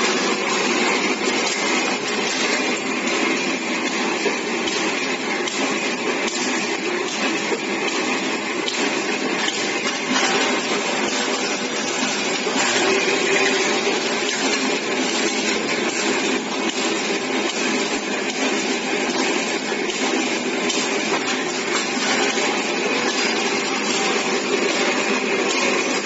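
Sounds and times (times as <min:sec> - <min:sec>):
machine whirring: 0:00.0 - 0:26.0.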